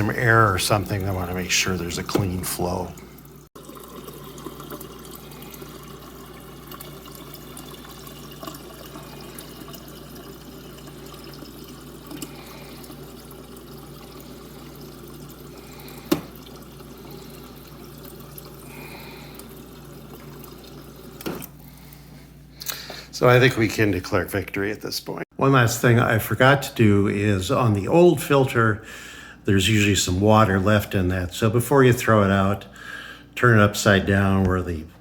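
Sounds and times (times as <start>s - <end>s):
water running into a pitcher: 0.0s - 22.0s.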